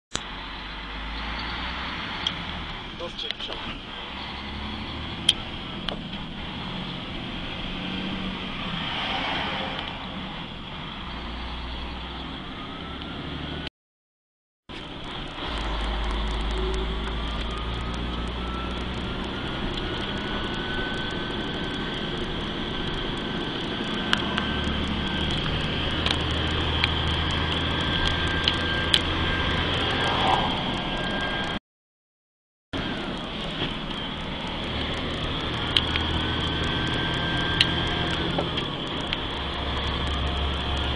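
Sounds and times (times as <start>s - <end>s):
diesel truck engine running: 0.2s - 8.8s, 14.7s - 31.6s, 32.8s - 40.9s
high turbocharger whine: 0.2s - 13.7s, 14.7s - 31.6s, 32.8s - 40.9s
sharp ticks: 34.1s - 40.9s.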